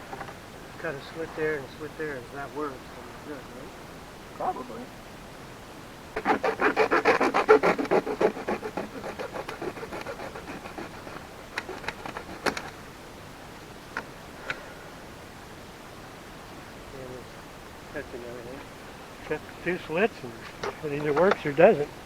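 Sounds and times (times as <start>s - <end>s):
hand saw cutting plastic pipe: 6.2s - 12.8s
light clicks and knocks: 20.4s - 21.5s.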